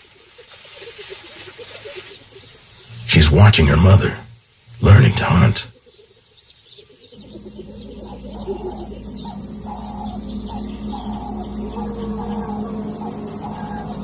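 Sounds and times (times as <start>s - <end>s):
high insect drone: 7.1s - 14.0s.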